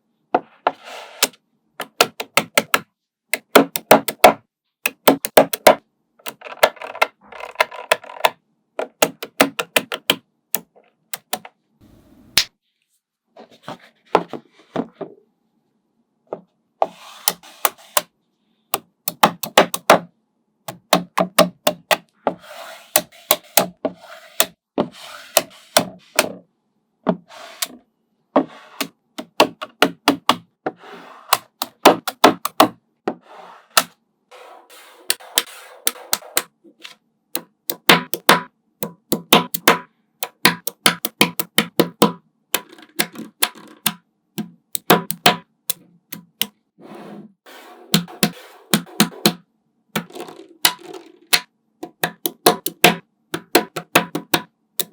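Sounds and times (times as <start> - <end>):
magnetic balls clicking together: 4.9 - 8.4, 37.4 - 44.0, 44.6 - 46.5, 50.0 - 54.9.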